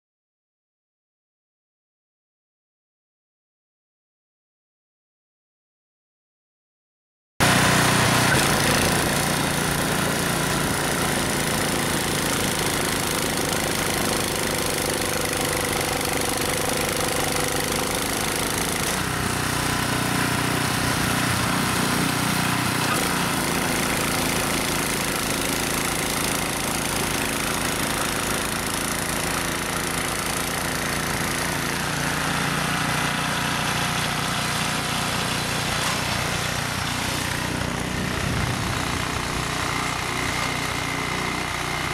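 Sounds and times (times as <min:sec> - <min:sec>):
snow blower engine running: 0:07.4 - 0:41.9.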